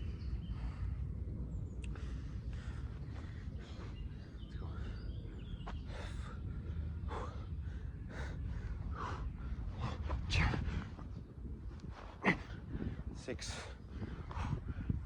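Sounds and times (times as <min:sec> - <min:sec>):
low rumble: 0:00.0 - 0:15.0
man breathing hard: 0:01.8 - 0:10.9, 0:12.2 - 0:15.0.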